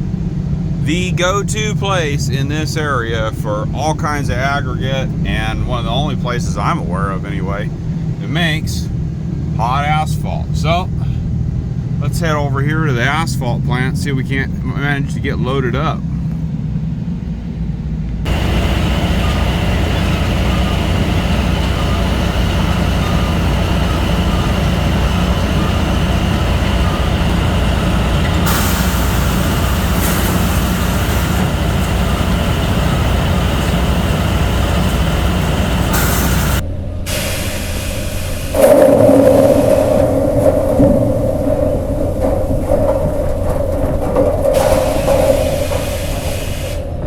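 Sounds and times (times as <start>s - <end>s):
road noise: 0.0s - 47.0s
truck engine drone: 0.0s - 47.0s
bright hiss: 18.3s - 42.6s.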